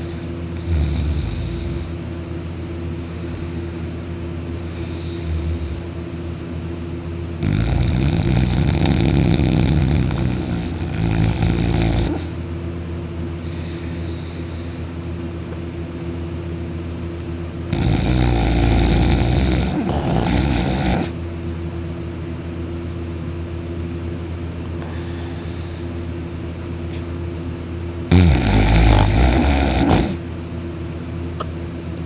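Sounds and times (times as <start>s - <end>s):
man snoring loudly: 0.6s - 2.0s, 4.8s - 5.9s, 7.4s - 12.4s, 17.7s - 21.2s, 28.1s - 30.2s.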